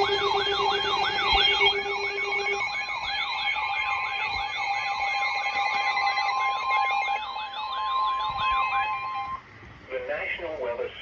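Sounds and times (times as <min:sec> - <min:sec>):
steady low tone: 0:00.0 - 0:09.4
electronic siren yelping: 0:00.0 - 0:09.5.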